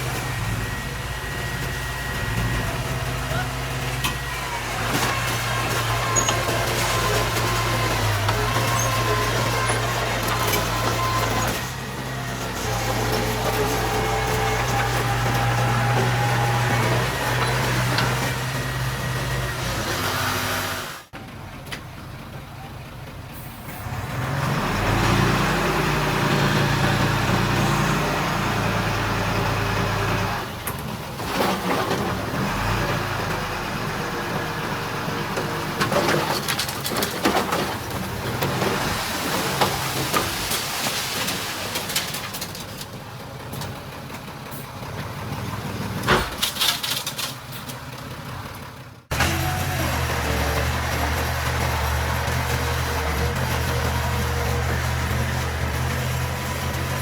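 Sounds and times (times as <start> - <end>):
heavy machinery diesel engines: 0.0 - 57.0.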